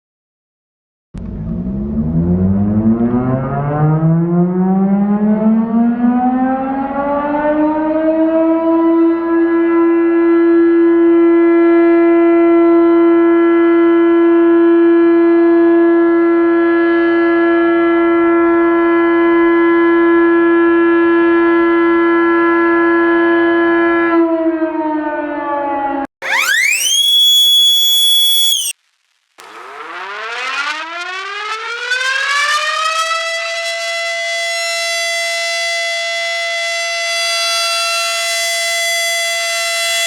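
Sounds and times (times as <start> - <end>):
tornado siren: 1.2 - 10.7, 22.7 - 40.0.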